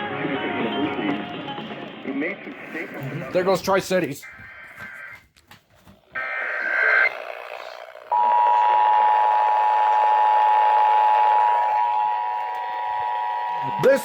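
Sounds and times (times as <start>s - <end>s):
radio hiss: 0.0s - 5.2s, 6.2s - 8.0s.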